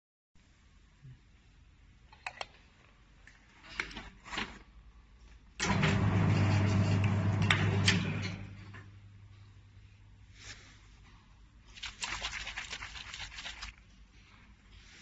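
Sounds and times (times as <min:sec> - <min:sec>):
machine motor humming: 0:05.6 - 0:08.7.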